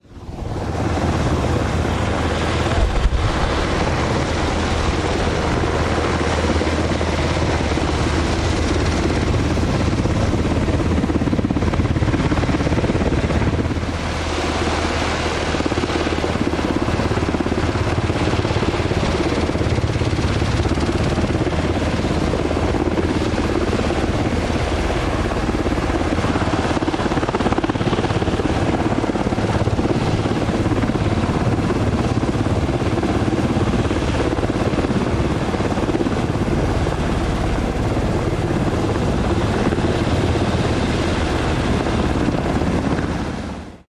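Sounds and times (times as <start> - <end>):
helicopter rotor and engines: 0.0 - 43.9.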